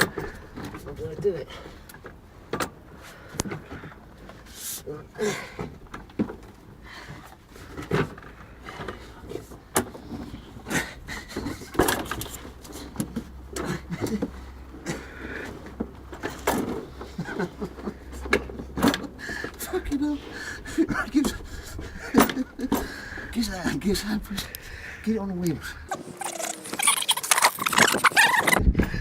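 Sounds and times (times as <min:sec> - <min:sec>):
man grunting: 0:05.0 - 0:05.6.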